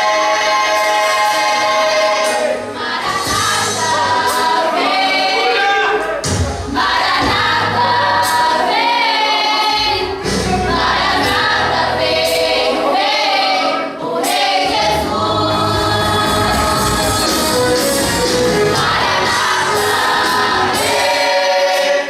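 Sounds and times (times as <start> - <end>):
musical accompaniment with bass: 0.0 - 22.0
vocal group singing gospel: 0.0 - 22.0.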